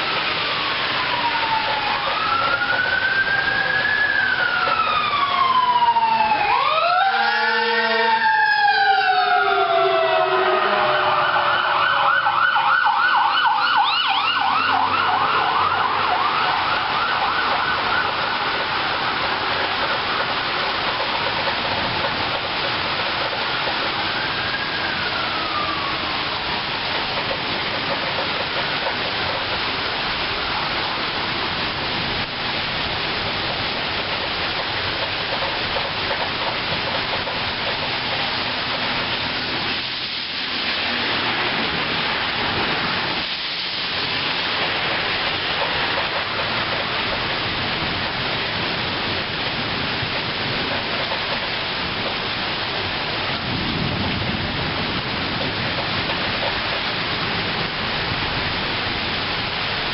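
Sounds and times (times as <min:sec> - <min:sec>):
rain hissing: 0:00.0 - 0:08.3, 0:13.8 - 0:59.9
emergency vehicle sirens: 0:00.0 - 0:59.9.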